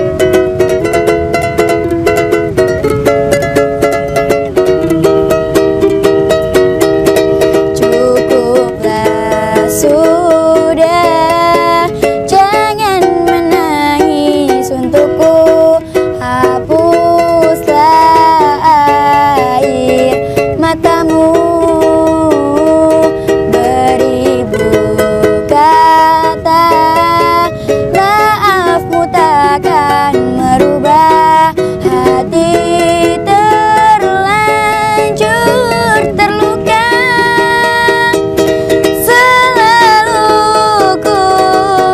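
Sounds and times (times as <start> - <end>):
song with plucked strings: 0.0 - 41.9.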